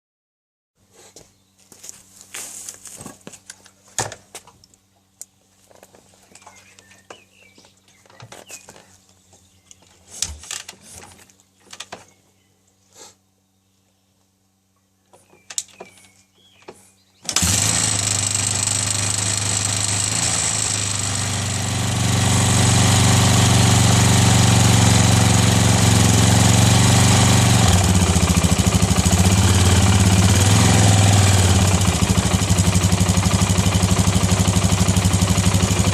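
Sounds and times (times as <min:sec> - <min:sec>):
motorcycle engine running: 0:17.4 - 0:35.9.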